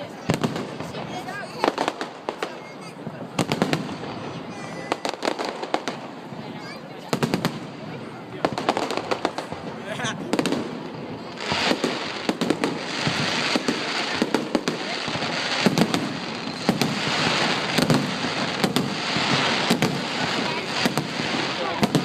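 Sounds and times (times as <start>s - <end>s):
firework bangs: 0.0s - 22.0s
firework crackling: 0.0s - 22.0s.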